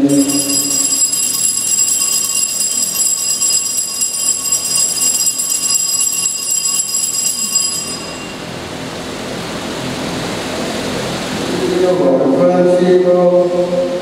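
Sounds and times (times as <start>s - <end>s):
altar bells jingling: 0.0s - 8.7s.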